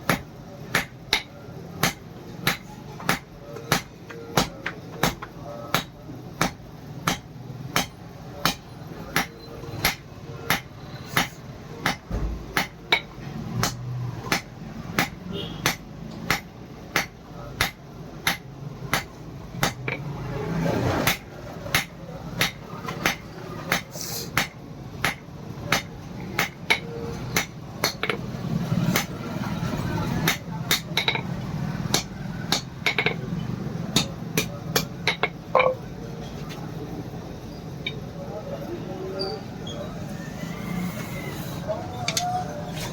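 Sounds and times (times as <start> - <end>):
hammer striking iron on anvil: 0.0 - 20.1, 21.0 - 28.3, 30.2 - 31.3, 31.9 - 33.2, 33.9 - 35.8.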